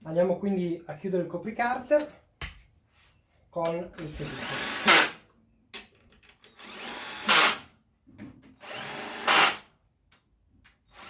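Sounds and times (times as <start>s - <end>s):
cordless drill driving screws: 4.1s - 5.2s, 6.4s - 7.7s, 8.6s - 9.7s.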